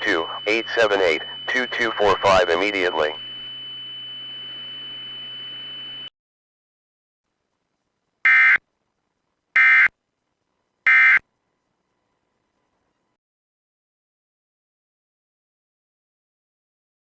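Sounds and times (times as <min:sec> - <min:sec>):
radio hiss: 0:00.0 - 0:03.3
buzzing digital data tones: 0:00.0 - 0:06.0.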